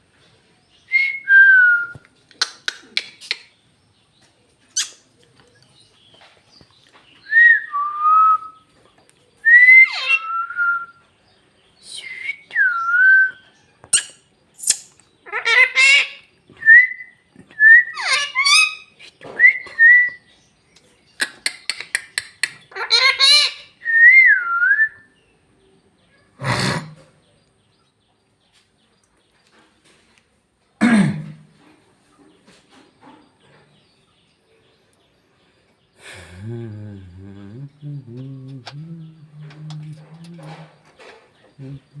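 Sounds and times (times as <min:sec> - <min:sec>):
parrot buzzy chattering: 0:21.2 - 0:23.6, 0:36.9 - 0:40.8, 0:41.6 - 0:42.0.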